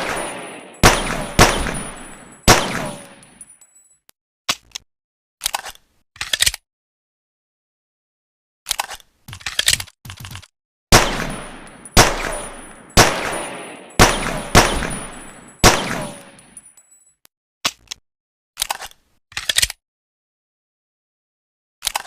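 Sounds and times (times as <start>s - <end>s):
pistol shots ringing: 0.0s - 3.4s, 10.9s - 16.6s.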